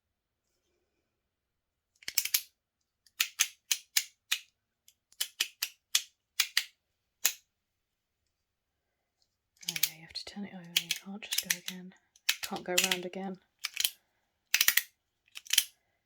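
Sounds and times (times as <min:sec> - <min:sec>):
metal fidget clicking: 0:09.6 - 0:10.0, 0:10.7 - 0:15.8.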